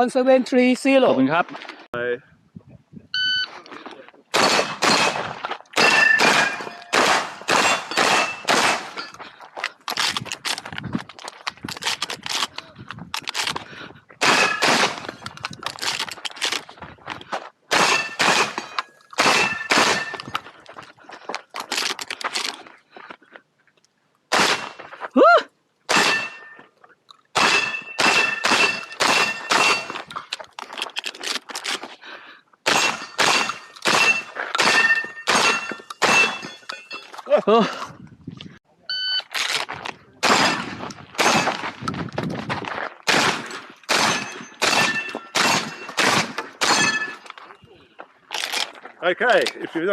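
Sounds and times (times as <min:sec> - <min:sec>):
shotgun shots: 0:04.3 - 0:09.0, 0:14.2 - 0:15.2, 0:17.7 - 0:20.2, 0:24.3 - 0:24.8, 0:25.9 - 0:26.4, 0:27.4 - 0:30.0, 0:32.7 - 0:36.6, 0:40.2 - 0:41.8, 0:43.1 - 0:47.1
metallic ring of steel targets: 0:05.8 - 0:09.2, 0:17.8 - 0:20.3, 0:25.9 - 0:26.6, 0:27.4 - 0:30.0, 0:32.7 - 0:37.2, 0:43.9 - 0:47.4.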